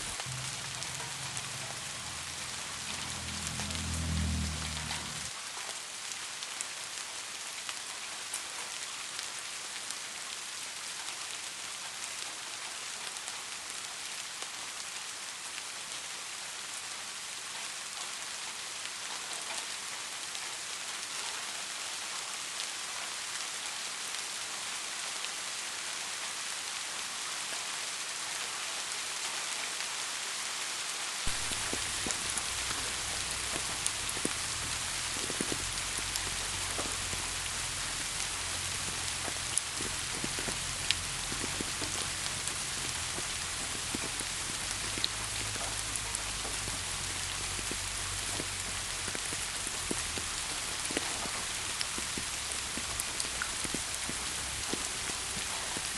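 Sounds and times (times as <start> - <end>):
low rumble: 0.0 - 5.3, 31.3 - 48.6
rain pattering: 0.0 - 55.9.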